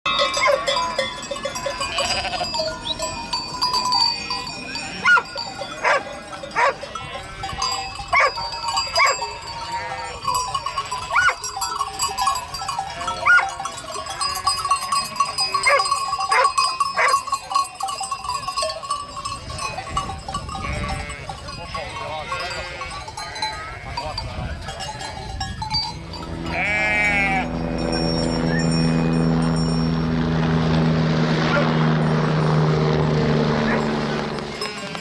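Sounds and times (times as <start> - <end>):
sheep bleating: 1.8 - 2.7, 9.0 - 10.2, 22.2 - 24.0, 26.4 - 27.8, 34.4 - 35.0.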